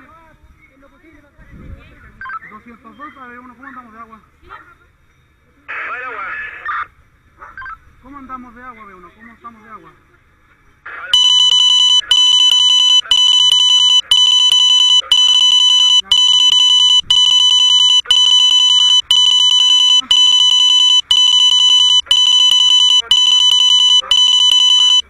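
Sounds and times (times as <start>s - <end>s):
high-pitched electronic alarm beeps: 11.2s - 25.0s.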